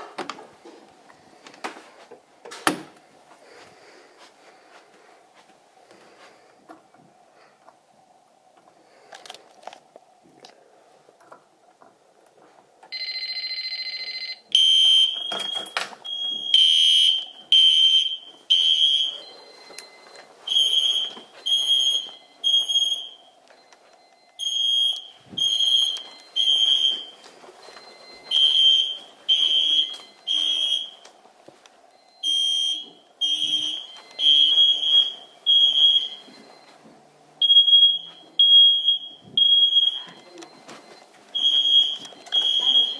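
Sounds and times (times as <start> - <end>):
fire alarm horn blasts: 13.0 - 19.3, 24.4 - 27.1, 28.3 - 31.1, 32.2 - 36.3, 41.4 - 42.9
steady alarm buzz: 13.0 - 31.1, 32.2 - 36.5, 37.4 - 42.9.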